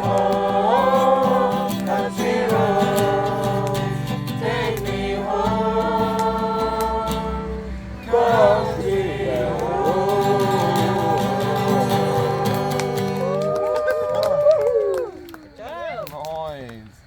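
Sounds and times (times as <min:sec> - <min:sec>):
steady musical accompaniment: 0:00.0 - 0:13.2
voices singing together: 0:00.0 - 0:13.6.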